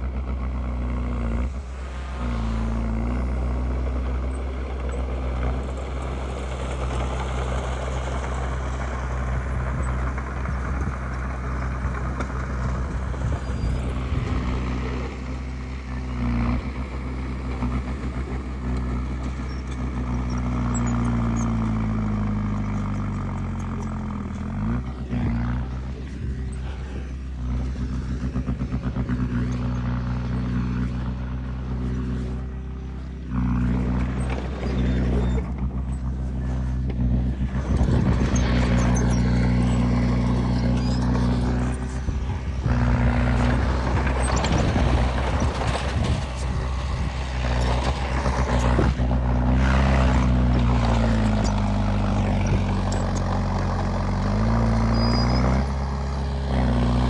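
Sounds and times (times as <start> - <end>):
heavy diesel engine running: 0.0 - 57.0
rough clattering and scraping: 22.6 - 55.6.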